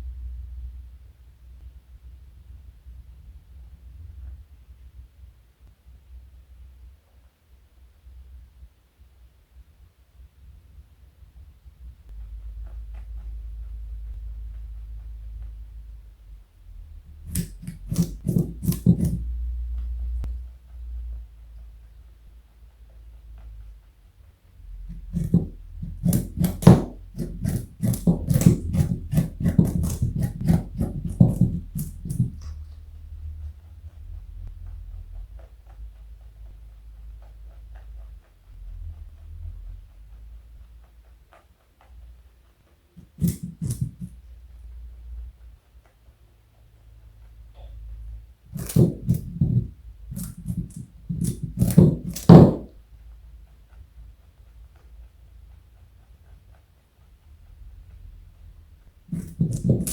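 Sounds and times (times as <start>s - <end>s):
rabbit crunching a carrot: 17.1s - 19.4s, 24.7s - 44.2s.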